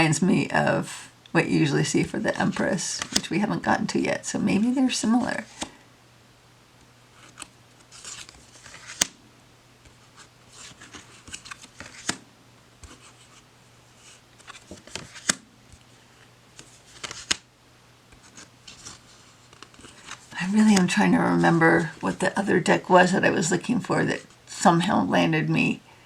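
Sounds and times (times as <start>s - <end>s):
cards clicking down: 7.2s - 9.2s, 10.6s - 12.2s, 14.4s - 15.4s, 16.6s - 17.4s
cards sliding against each other: 7.2s - 9.2s, 9.8s - 12.2s, 14.0s - 15.9s, 16.6s - 17.4s, 18.1s - 20.4s.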